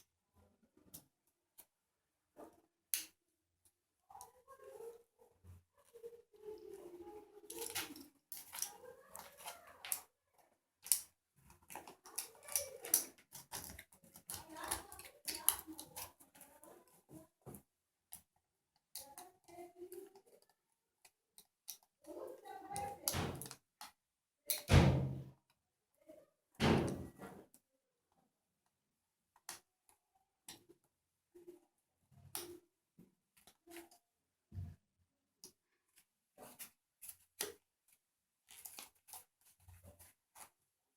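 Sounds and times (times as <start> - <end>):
small parts clicking and scraping: 7.4 - 16.8, 38.4 - 40.6.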